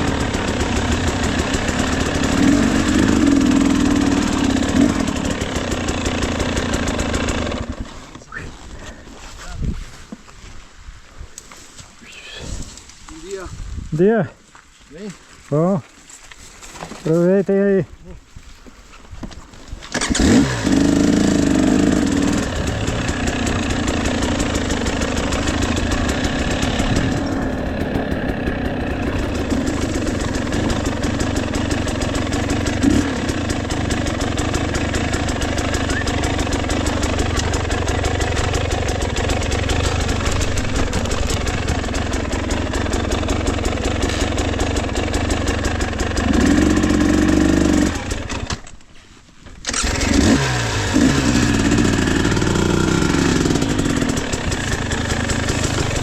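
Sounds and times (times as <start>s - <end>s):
two-stroke dirt bike engine revving: 0.0s - 8.0s, 19.9s - 48.6s, 49.6s - 56.0s.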